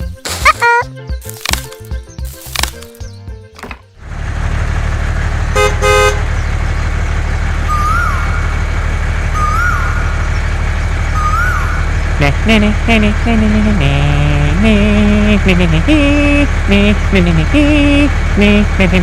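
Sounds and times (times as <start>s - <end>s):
vehicle engine running: 0.0s - 19.0s
horn toots: 5.5s - 6.4s
rising and falling chirp: 6.4s - 12.8s.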